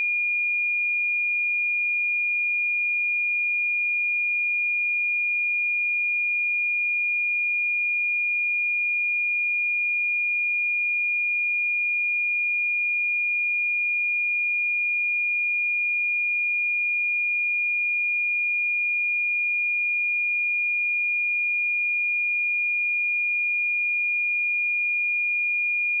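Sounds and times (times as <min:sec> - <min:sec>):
sine wave test tone: 0:00.0 - 0:26.0.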